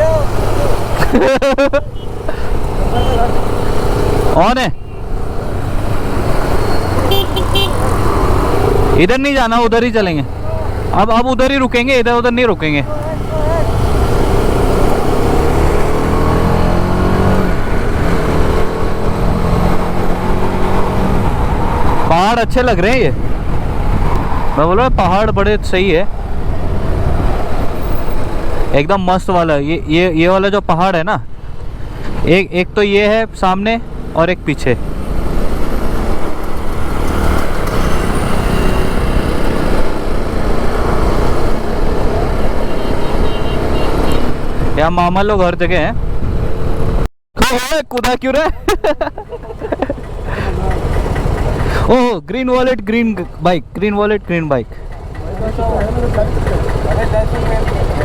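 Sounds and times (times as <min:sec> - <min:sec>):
motorcycle engine at speed: 0:05.1 - 0:09.0, 0:12.8 - 0:22.1, 0:34.8 - 0:44.6, 0:49.2 - 0:51.9, 0:54.2 - 0:58.0
wind rush on microphone: 0:20.5 - 0:28.7
motorcycle engine running: 0:49.3 - 0:51.9, 0:54.2 - 0:58.0.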